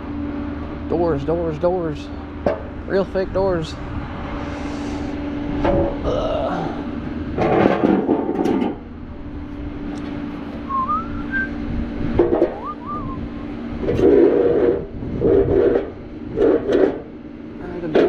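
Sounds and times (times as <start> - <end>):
steady low hum: 0.0 - 18.0
person whistling: 10.7 - 11.6, 12.6 - 13.5.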